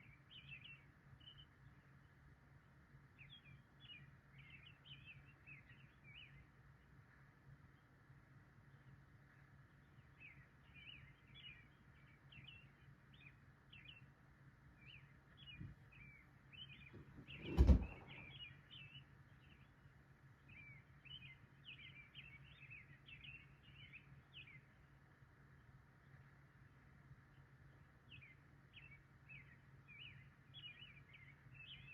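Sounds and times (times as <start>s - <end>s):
small birds twittering: 0.0s - 2.2s, 3.1s - 7.9s, 8.6s - 24.9s, 27.2s - 31.9s
dull thump: 17.0s - 18.3s.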